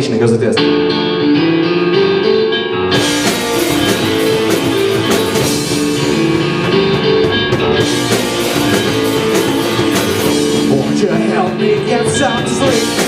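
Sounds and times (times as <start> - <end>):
repeating guitar riff: 3.0 - 11.3
drums and cymbals: 3.0 - 13.0.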